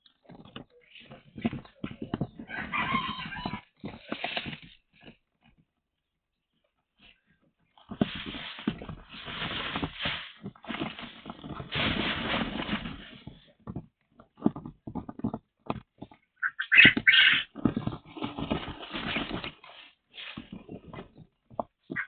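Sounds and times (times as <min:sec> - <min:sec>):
pet birds squawking: 0:16.4 - 0:17.5.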